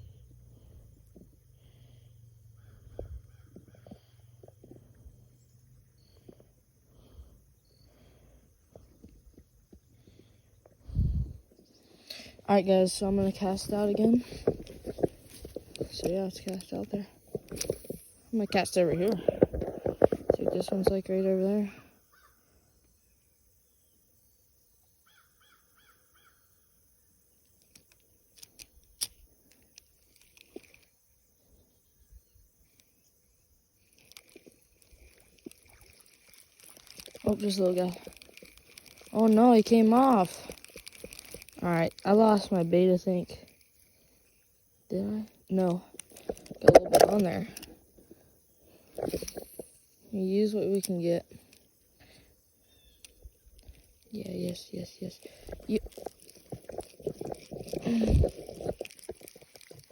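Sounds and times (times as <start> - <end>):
faint clicks and ticks: 27.4 - 30.9, 33.8 - 44.0.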